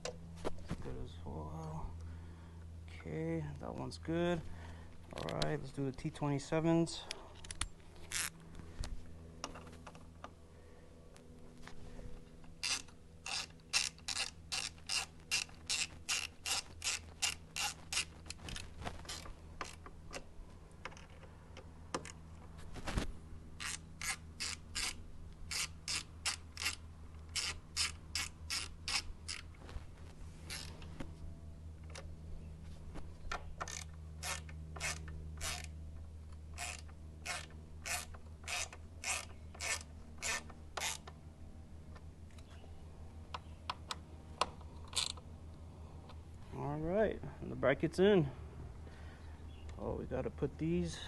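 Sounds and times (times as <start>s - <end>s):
hand ratchet clicking: 12.5s - 20.2s, 23.6s - 29.5s, 33.6s - 35.7s, 36.5s - 41.2s.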